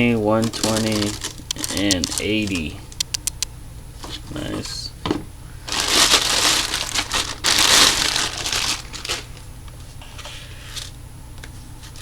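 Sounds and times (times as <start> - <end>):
packaging crinkling and rustling: 0.0 - 3.0, 5.7 - 9.9.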